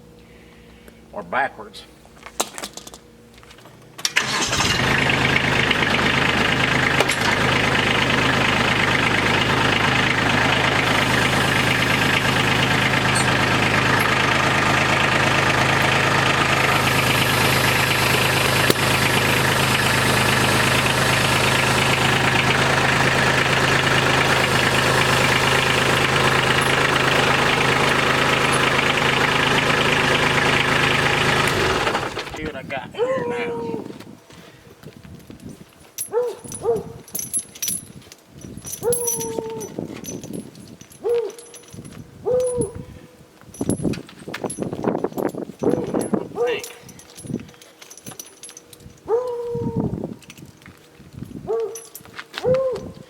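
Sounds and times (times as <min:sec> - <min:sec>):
diesel tractor engine idling: 0:04.1 - 0:32.6.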